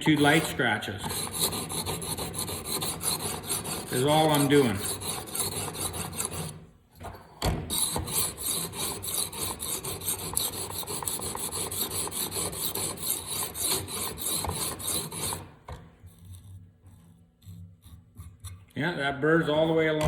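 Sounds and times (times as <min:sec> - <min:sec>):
sharpening stone rasping on knife: 0:00.0 - 0:06.6, 0:07.7 - 0:15.5.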